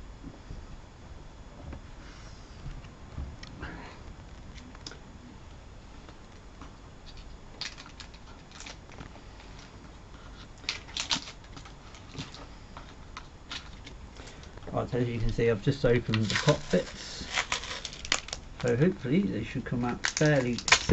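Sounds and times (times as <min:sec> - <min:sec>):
packaging being cut and pried open: 0:10.6 - 0:12.4, 0:16.1 - 0:18.4, 0:19.9 - 0:20.9.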